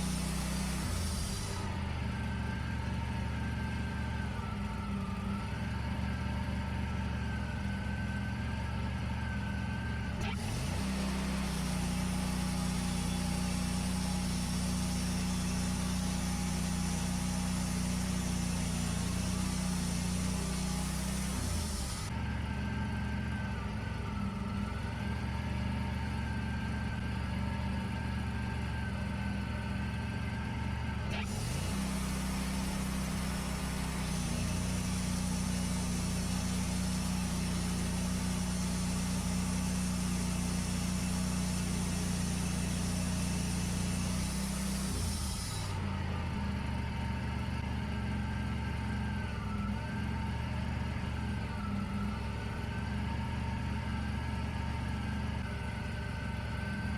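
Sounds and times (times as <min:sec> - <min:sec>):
sawing hiss: 0:00.0 - 0:01.8, 0:10.4 - 0:22.1, 0:31.2 - 0:45.9
band sawmill running: 0:00.0 - 0:56.9.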